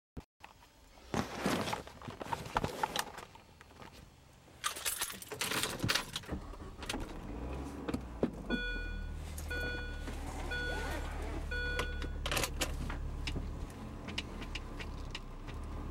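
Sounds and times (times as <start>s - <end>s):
keys jangling: 4.6s - 6.2s
short electronic beep: 8.6s - 12.2s.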